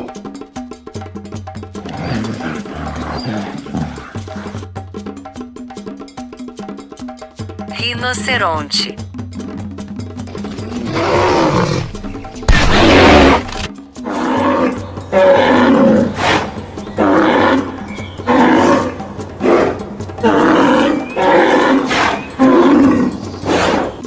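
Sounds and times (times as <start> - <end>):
rhinoceros calling: 1.8 - 4.7, 10.3 - 24.0.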